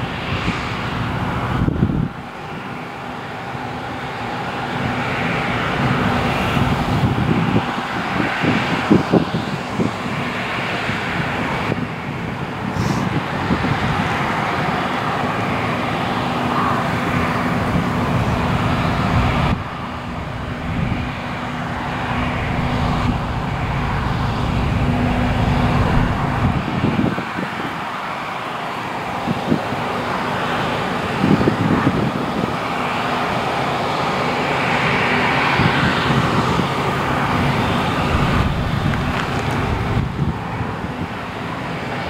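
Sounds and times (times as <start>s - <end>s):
combine harvester running: 16.8s - 27.7s, 37.0s - 41.0s.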